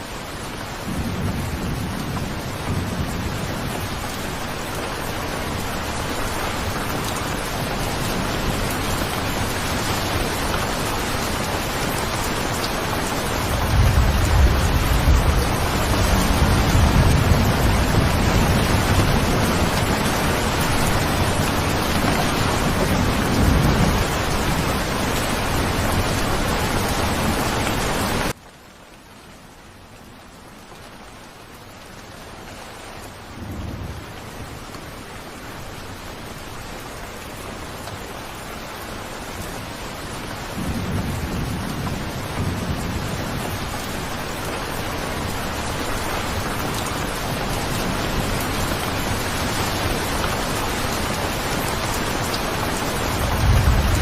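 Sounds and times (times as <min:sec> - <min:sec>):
heavy rain: 0:00.0 - 0:54.0
low thunder rumbles: 0:00.8 - 0:04.2, 0:13.1 - 0:27.5, 0:40.5 - 0:43.8, 0:52.8 - 0:54.0.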